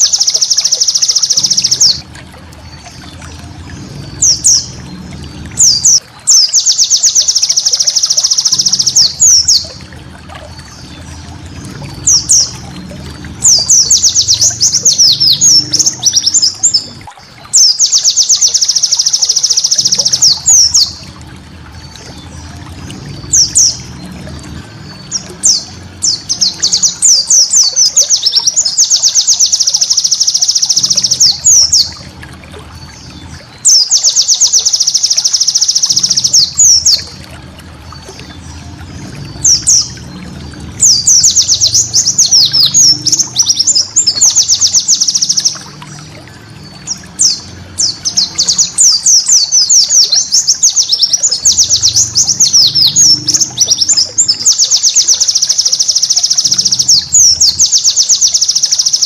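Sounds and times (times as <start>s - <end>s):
bird chirping rapidly: 0.0s - 2.0s, 5.6s - 9.8s, 13.4s - 21.0s, 24.9s - 31.9s, 33.6s - 37.1s, 40.8s - 45.7s, 46.9s - 59.0s.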